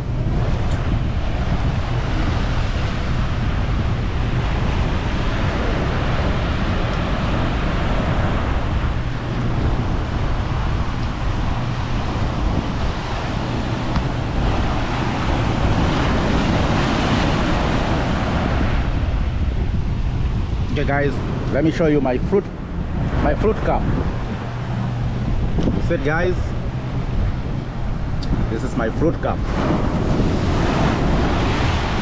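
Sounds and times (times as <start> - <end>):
ocean surf rushing: 0.0 - 32.0
wind buffeting microphone: 0.0 - 32.0.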